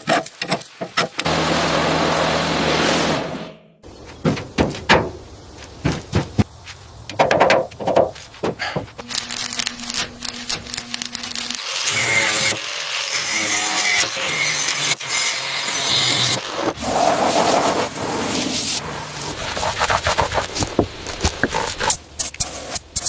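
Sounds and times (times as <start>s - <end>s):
rough scraping and grinding: 0.0s - 3.6s, 7.8s - 22.4s
sharp knocks: 7.1s - 9.0s.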